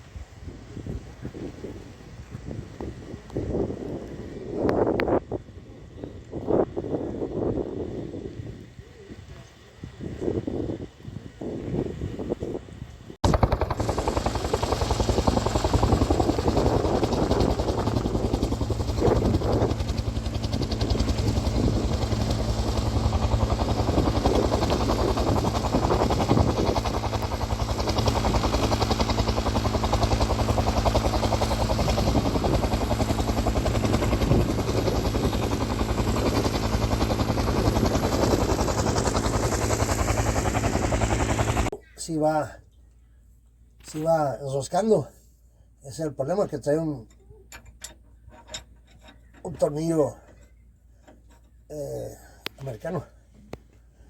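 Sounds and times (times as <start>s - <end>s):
engine droning steadily: 13.2s - 41.7s.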